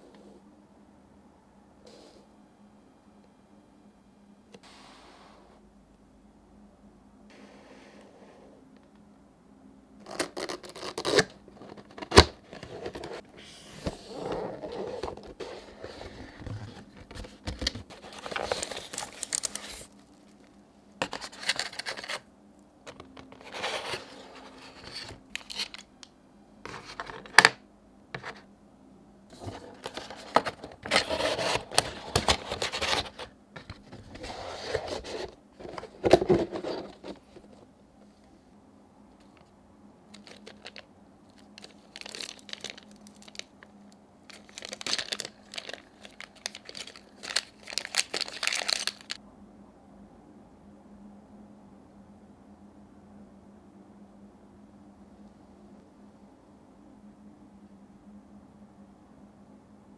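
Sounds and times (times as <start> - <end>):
cardboard box scraping and rustling: 10.7 - 19.9, 23.2 - 25.8, 29.4 - 37.7.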